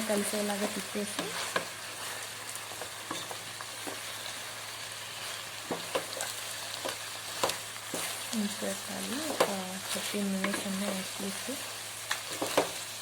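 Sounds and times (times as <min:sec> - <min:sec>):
meat sizzling in a pan: 0:00.0 - 0:13.0
spatula scraping a pan: 0:00.6 - 0:04.1, 0:05.2 - 0:08.3.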